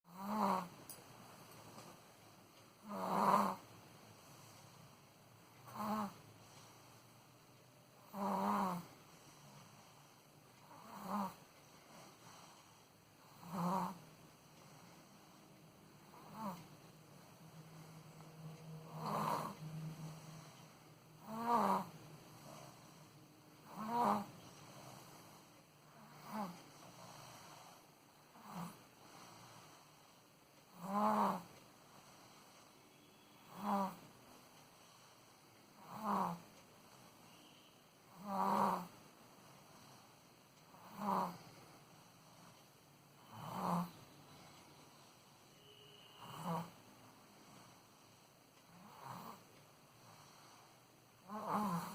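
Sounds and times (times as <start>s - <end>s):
baby snoring: 0.1s - 0.8s, 2.8s - 4.7s, 5.6s - 6.8s, 8.0s - 10.0s, 10.6s - 15.2s, 16.0s - 16.7s, 17.7s - 29.8s, 30.7s - 34.1s, 35.8s - 36.5s, 37.4s - 40.0s, 40.7s - 42.6s, 43.2s - 44.6s, 45.6s - 46.8s, 48.7s - 51.9s
soft breathing hiss: 0.1s - 51.9s.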